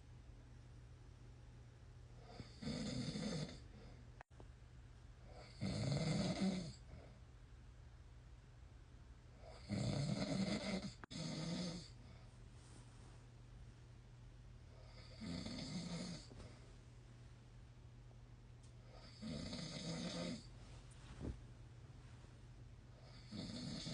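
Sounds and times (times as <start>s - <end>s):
man snoring: 2.2s - 3.6s, 5.3s - 6.8s, 9.4s - 12.0s, 14.8s - 16.3s, 18.9s - 20.5s, 23.0s - 23.9s.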